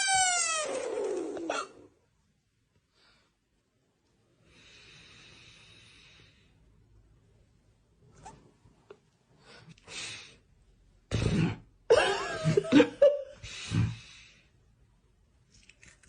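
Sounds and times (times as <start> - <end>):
faint breaths: 4.4 - 7.0.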